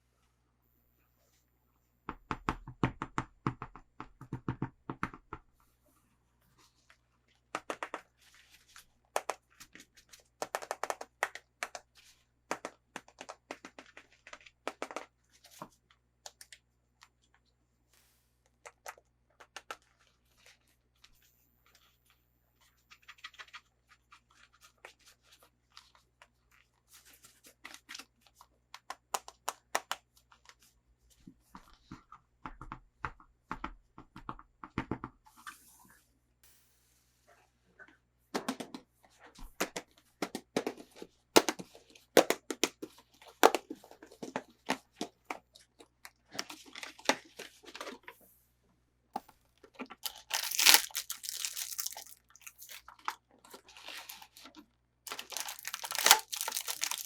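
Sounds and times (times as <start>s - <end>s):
packaging crackling and tearing: 50.0s - 52.8s, 55.1s - 57.0s.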